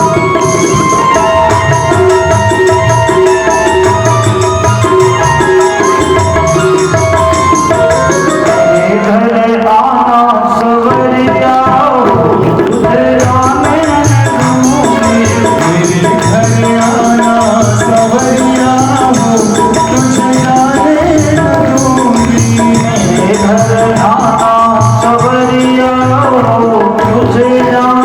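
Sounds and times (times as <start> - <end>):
jingling hand percussion: 0.0 - 28.0
tabla beat: 0.0 - 28.0
devotional singing: 7.8 - 28.0.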